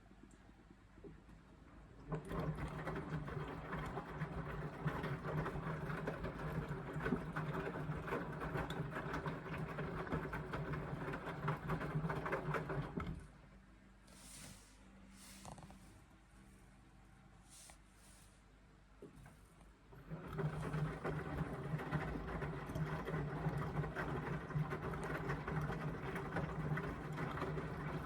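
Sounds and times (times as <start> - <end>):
washing machine drum hum and rattle: 1.0 - 13.5, 19.0 - 28.0.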